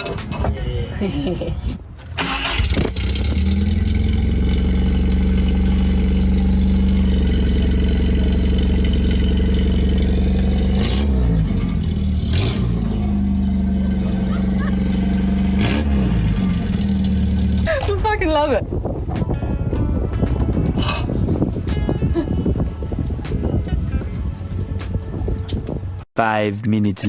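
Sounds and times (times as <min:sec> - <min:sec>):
car engine starting and idling: 0:02.0 - 0:21.7.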